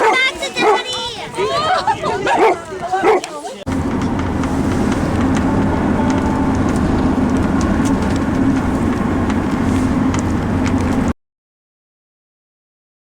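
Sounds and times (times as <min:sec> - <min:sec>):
vehicle low rumble: 0:00.9 - 0:11.2.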